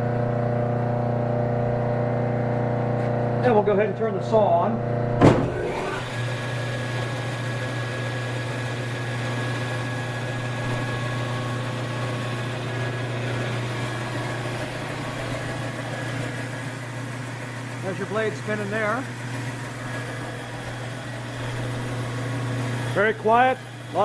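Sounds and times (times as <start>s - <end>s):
converter low hum: 0.0s - 24.0s
band saw running: 5.0s - 24.0s
band saw switch clunk: 5.2s - 5.7s.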